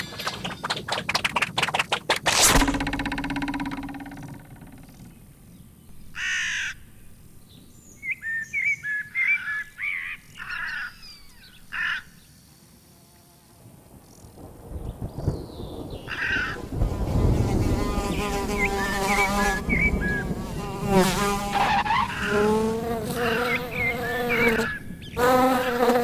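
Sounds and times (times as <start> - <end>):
loud hit with ringing hum: 2.4 - 6.2.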